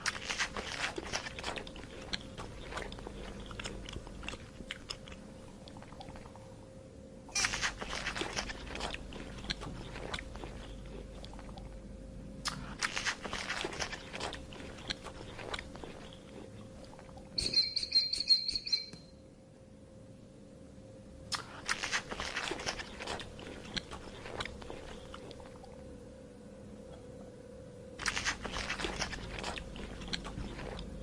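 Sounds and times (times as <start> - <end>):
animal chewing crunchy bites: 0.0 - 6.4, 7.3 - 11.8, 12.5 - 17.7, 21.3 - 25.8, 28.0 - 31.0
high squeak with clicks: 17.4 - 19.1.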